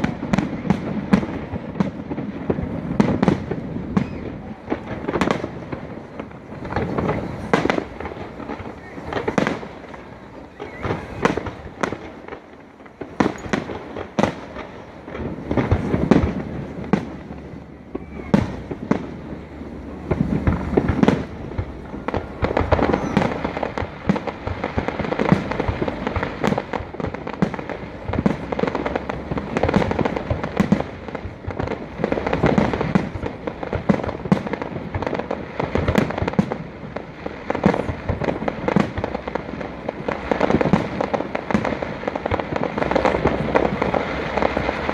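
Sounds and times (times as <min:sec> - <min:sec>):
fireworks bursting: 0:00.0 - 0:44.9.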